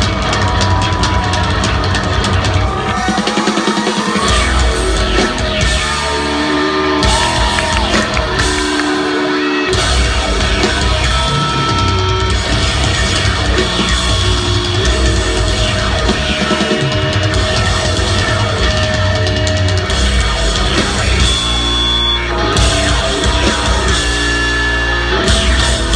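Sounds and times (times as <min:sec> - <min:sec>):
live rock band playing loud: 0:00.0 - 0:25.9
shouted vocals: 0:00.0 - 0:25.9.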